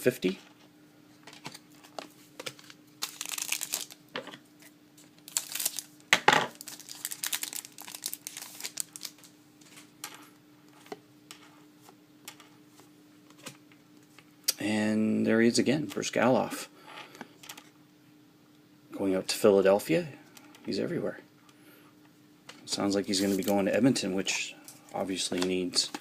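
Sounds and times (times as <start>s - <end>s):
faint steady hum: 0.0s - 26.0s
wrapper crinkling and tearing: 1.7s - 4.0s, 5.2s - 9.3s.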